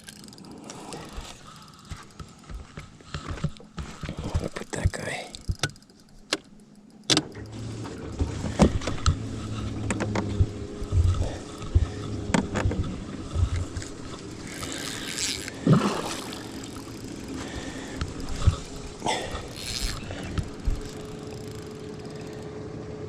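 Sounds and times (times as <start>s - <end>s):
knocks and scrapes on boat: 1.2s - 5.7s, 7.6s - 15.2s
electric motor humming: 4.7s - 23.0s
rush of water: 15.5s - 16.7s.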